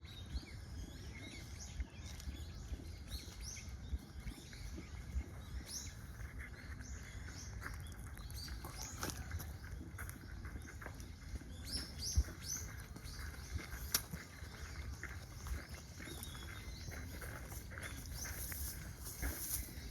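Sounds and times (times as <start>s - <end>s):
wind on microphone: 0.0s - 14.8s
small birds chirping: 0.0s - 19.9s.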